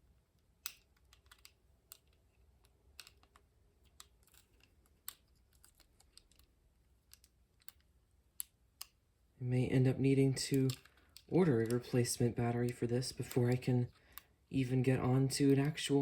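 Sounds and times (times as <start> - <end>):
faint clicks and taps of handling: 0.4 - 9.0, 10.5 - 11.9.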